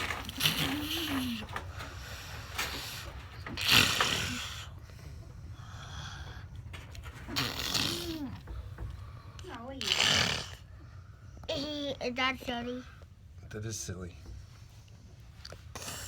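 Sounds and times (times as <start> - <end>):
child humming: 7.4 - 8.4.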